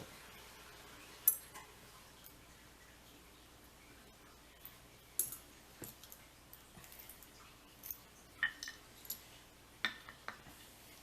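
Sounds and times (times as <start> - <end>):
metal tools clicking and tapping: 1.2 - 2.4, 4.6 - 10.4.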